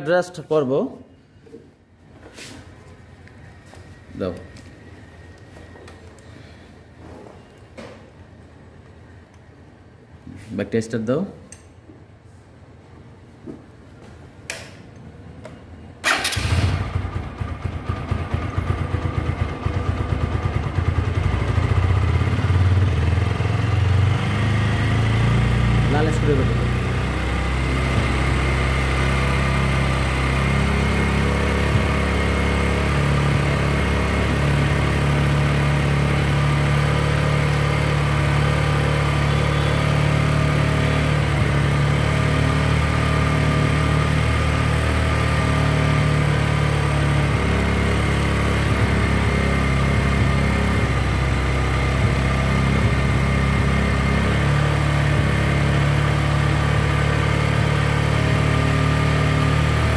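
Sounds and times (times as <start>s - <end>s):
motorcycle engine idling: 16.1s - 42.0s.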